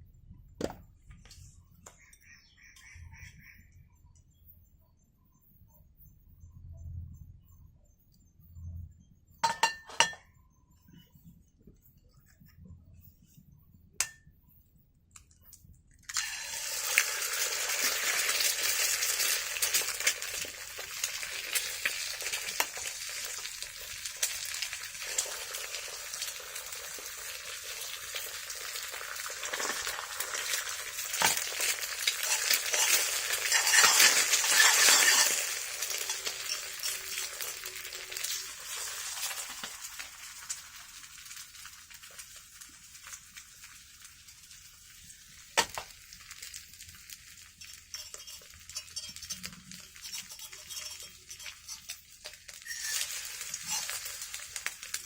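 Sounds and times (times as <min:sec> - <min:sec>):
eggs sizzling in hot oil: 0:16.1 - 0:55.0.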